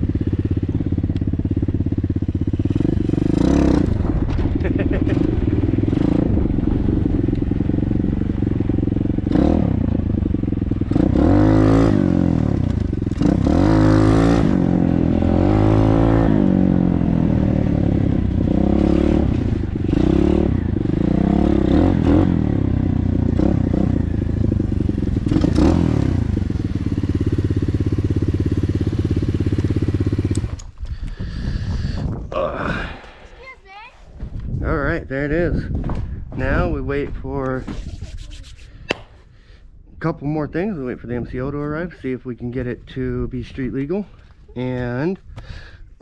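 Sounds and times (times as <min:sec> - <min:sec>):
dirt bike engine revving: 0:00.0 - 0:30.7.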